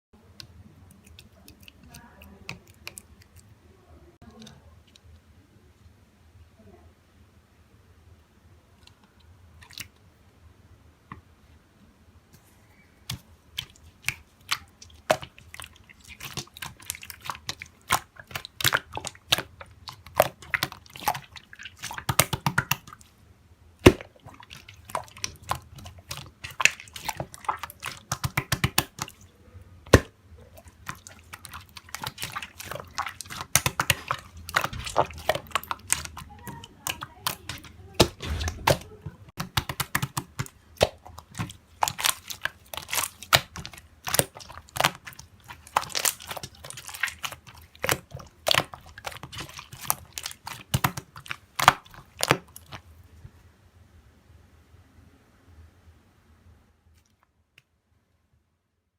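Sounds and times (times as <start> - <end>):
slime squished by hand: 13.0 - 23.2, 23.8 - 52.9.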